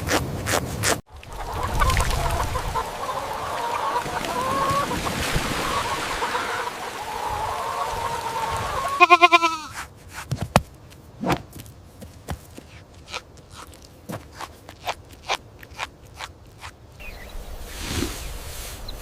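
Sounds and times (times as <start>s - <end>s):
goat bleating: 8.9s - 9.8s.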